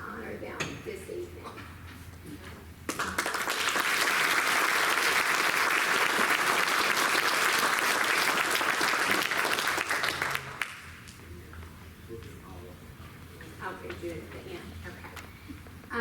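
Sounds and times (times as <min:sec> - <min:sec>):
audience applauding: 0:02.9 - 0:10.9.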